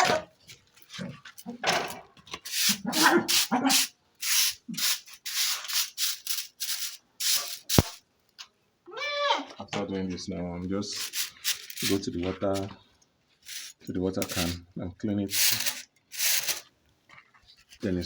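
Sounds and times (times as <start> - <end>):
broom sweeping a floor: 2.4 - 8.0, 10.9 - 12.7, 13.4 - 14.6, 15.3 - 16.6.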